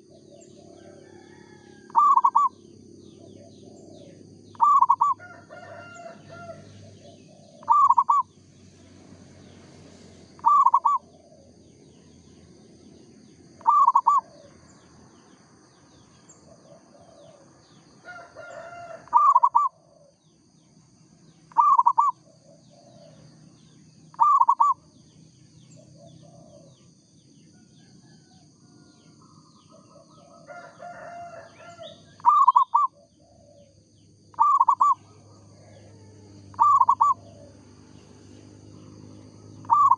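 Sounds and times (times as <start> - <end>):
dove cooing: 0.0 - 8.3, 10.4 - 11.6, 13.5 - 14.8, 16.4 - 20.2, 21.5 - 23.5, 24.1 - 24.8, 25.7 - 26.9, 29.7 - 38.0, 38.8 - 39.9
other birds calling: 0.0 - 8.7, 10.2 - 12.1, 13.4 - 20.5, 21.4 - 27.0, 29.2 - 39.9.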